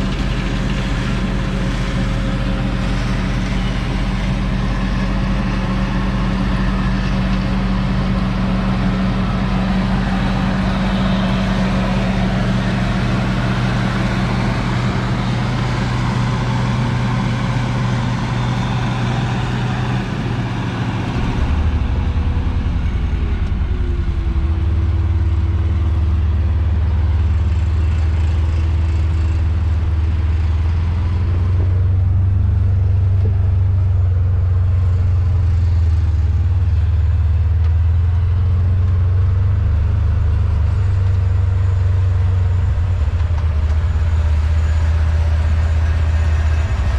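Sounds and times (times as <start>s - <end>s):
combine harvester running: 0.0s - 46.9s.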